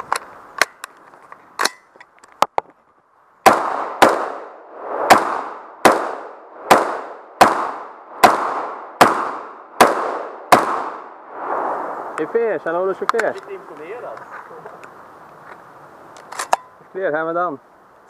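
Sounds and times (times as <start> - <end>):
rifle shots: 3.4 - 11.1.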